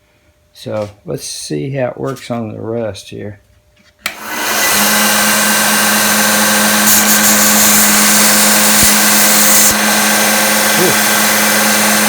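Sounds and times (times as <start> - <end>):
belt sander motor humming: 4.1 - 12.0
metal grinding on sanding belt: 5.6 - 12.0.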